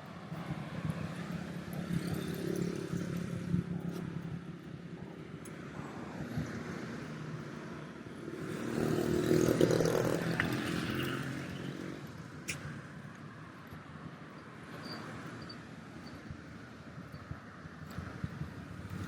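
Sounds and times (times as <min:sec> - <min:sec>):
vehicle passing by: 0:08.3 - 0:12.1.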